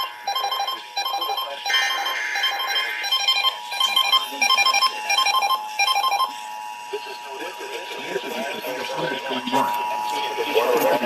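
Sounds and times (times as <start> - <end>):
weather radio alarms beeping: 0.0 - 6.5.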